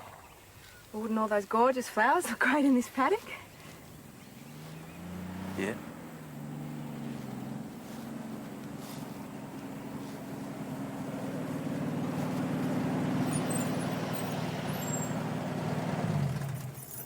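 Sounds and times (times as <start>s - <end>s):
vehicle engine running: 3.6s - 16.8s.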